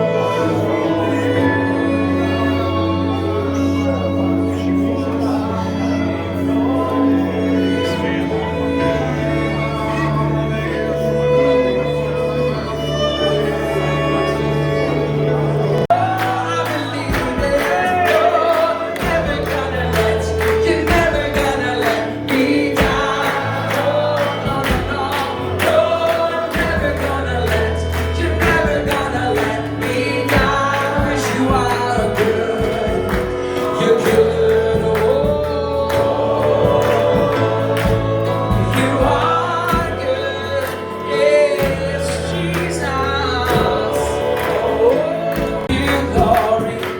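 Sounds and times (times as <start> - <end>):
voices singing: 0.0 - 46.9
bass and drums: 15.9 - 18.3, 19.0 - 40.2, 41.6 - 46.8.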